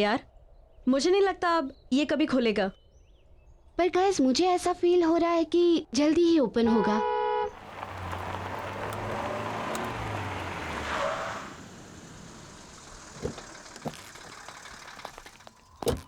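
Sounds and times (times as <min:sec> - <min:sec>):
vehicle engine and road noise: 0:07.2 - 0:16.0.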